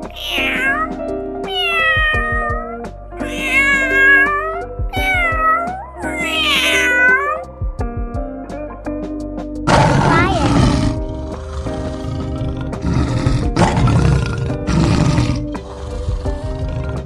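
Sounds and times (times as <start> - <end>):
cat meowing: 0.0 - 7.5, 9.8 - 11.0
background music with steady beat: 0.0 - 17.0.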